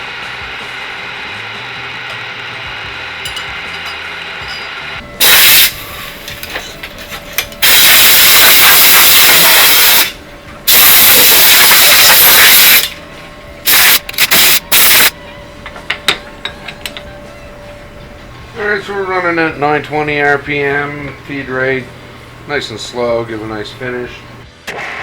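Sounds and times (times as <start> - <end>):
machine humming: 0.0 - 25.0
air blow gun hissing: 5.2 - 6.4, 7.6 - 13.0, 13.6 - 15.2.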